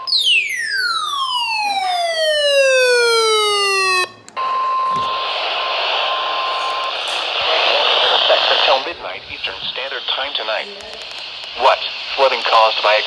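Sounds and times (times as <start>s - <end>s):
falling electronic alert tone: 0.0s - 4.2s.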